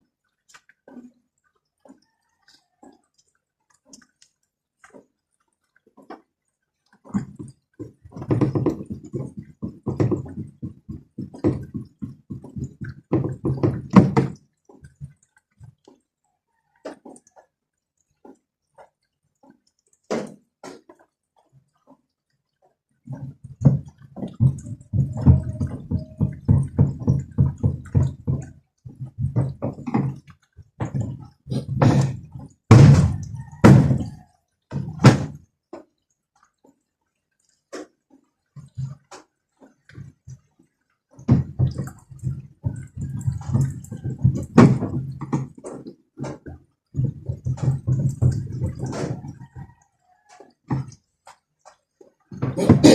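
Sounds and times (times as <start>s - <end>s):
washing machine low hum: 23.2s - 32.4s
loud knocks: 31.8s - 34.1s.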